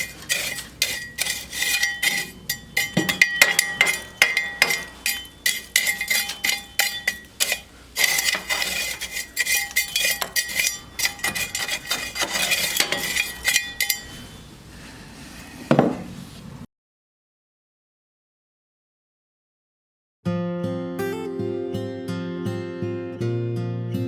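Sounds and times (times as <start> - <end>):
metallic clinking and scraping: 0.0 - 14.5.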